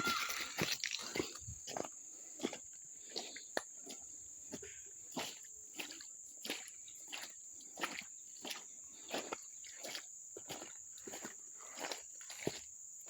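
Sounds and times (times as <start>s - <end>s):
footsteps walking: 0.0s - 2.6s
insects droning: 0.0s - 13.0s.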